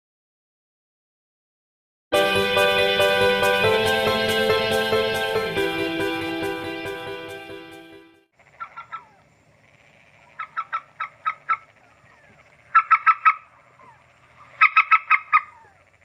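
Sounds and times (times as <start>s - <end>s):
night field background chorus: 2.2s - 16.0s
bird calling sharp repeated notes: 8.4s - 9.2s, 10.3s - 16.0s.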